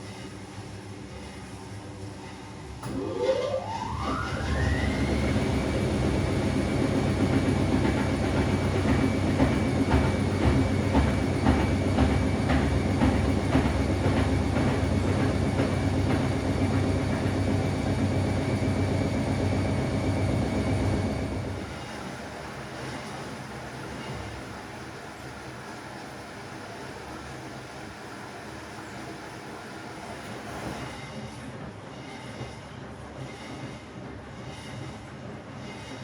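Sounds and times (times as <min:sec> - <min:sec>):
washing machine motor whining: 0:02.8 - 0:23.0.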